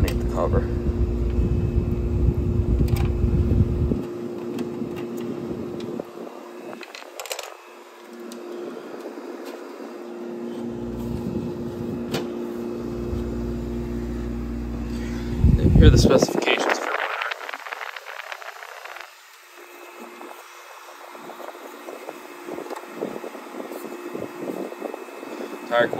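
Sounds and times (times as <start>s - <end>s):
air conditioner humming: 0.0s - 25.9s
air rushing on microphone: 14.8s - 19.3s.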